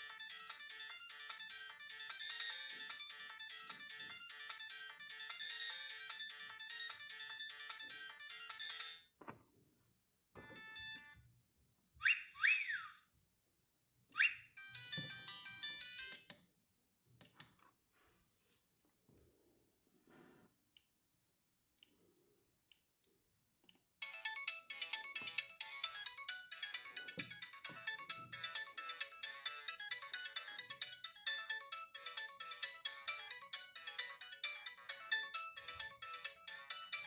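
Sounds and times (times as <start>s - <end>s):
polyphonic phone ringtone: 0.0s - 9.1s, 10.4s - 11.3s, 14.6s - 16.3s, 24.0s - 37.0s
phone tones and chirps: 10.4s - 11.2s.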